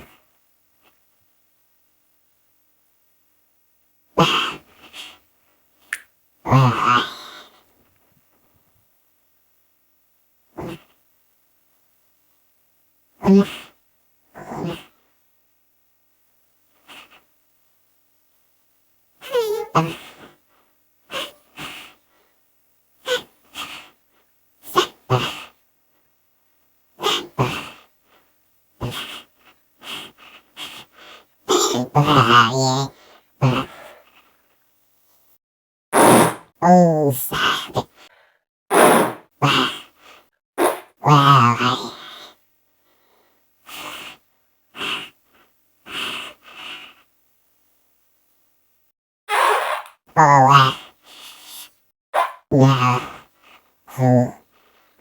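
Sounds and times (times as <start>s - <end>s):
person sneezing: 4.2s - 5.2s, 10.6s - 10.9s, 14.4s - 14.9s, 19.2s - 20.4s, 21.1s - 22.0s, 23.0s - 23.9s, 24.6s - 25.6s, 27.0s - 27.9s, 31.5s - 34.2s, 36.0s - 38.1s, 38.7s - 39.9s, 40.6s - 42.1s, 49.3s - 54.4s
person huffing breaths: 32.9s - 34.4s, 37.8s - 38.4s.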